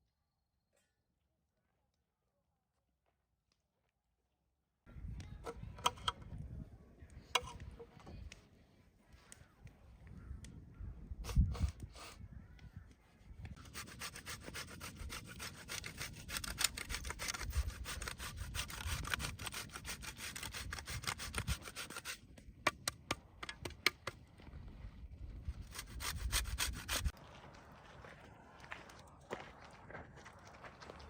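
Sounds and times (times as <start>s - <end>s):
hand tool rasping strokes: 13.6s - 23.8s, 25.6s - 27.2s.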